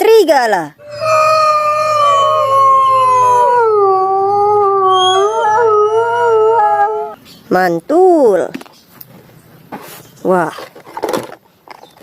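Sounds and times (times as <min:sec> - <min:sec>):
wolf howling: 0:00.8 - 0:07.2.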